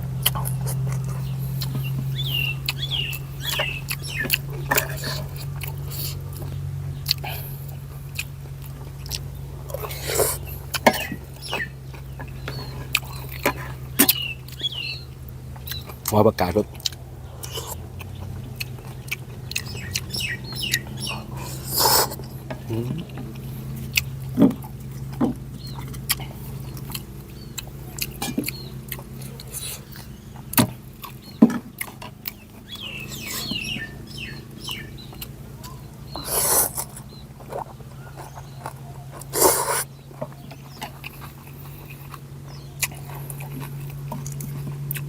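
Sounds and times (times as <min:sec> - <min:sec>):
person chewing and slurping: 0:00.0 - 0:16.1, 0:16.7 - 0:45.0
steady low hum: 0:00.0 - 0:45.0.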